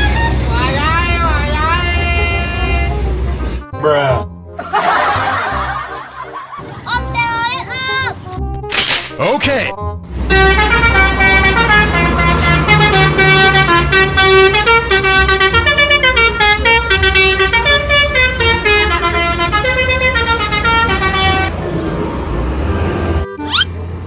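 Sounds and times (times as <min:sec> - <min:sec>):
bus engine rumble: 0:00.0 - 0:03.7, 0:04.5 - 0:08.6, 0:10.0 - 0:24.0
multi-tone air horn tune: 0:10.3 - 0:21.6.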